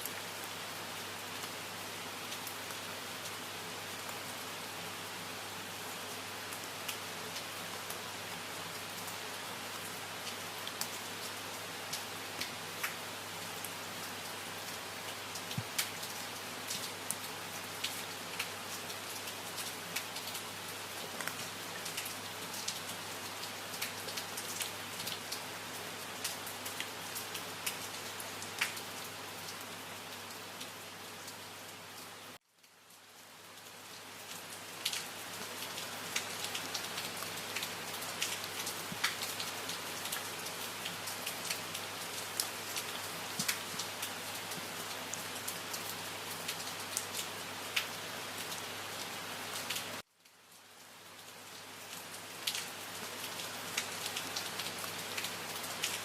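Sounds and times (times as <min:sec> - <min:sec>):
steady rain falling: 0:00.0 - 0:56.0
raindrops ticking: 0:28.6 - 0:28.8, 0:34.4 - 0:44.7.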